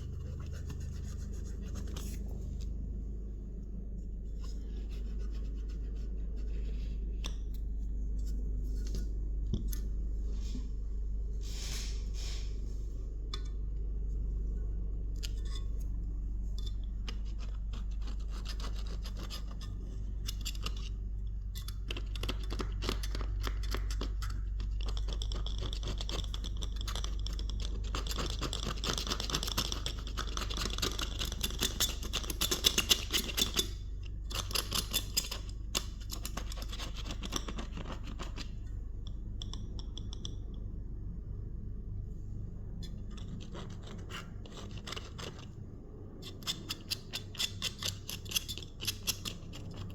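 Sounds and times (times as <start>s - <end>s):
scratching and rubbing strokes: 0.0s - 2.7s, 4.0s - 7.2s
steady low hum: 0.0s - 49.9s.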